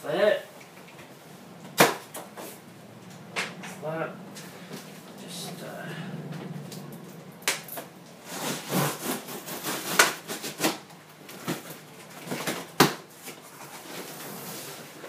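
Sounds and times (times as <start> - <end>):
cardboard rustling and scraping: 8.2 - 15.0.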